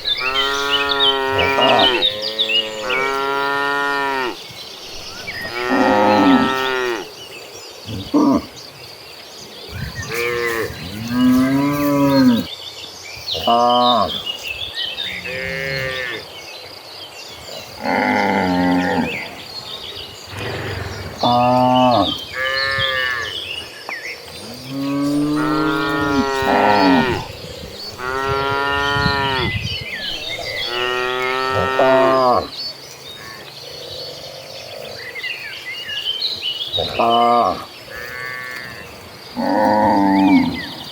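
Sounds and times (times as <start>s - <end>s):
cattle mooing: 0.0s - 4.4s, 5.4s - 7.1s, 24.4s - 27.3s, 27.9s - 29.5s, 30.1s - 32.5s
insects chirring: 0.0s - 40.9s.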